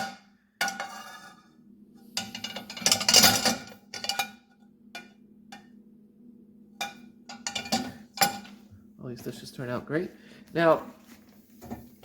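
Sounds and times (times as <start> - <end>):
low hum: 0.0 - 9.5.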